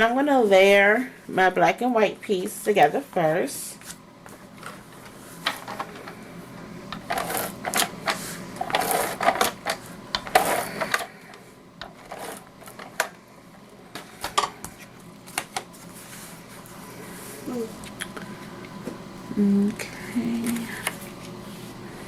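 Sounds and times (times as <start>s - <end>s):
paper rustling and scraping: 12.0s - 12.8s.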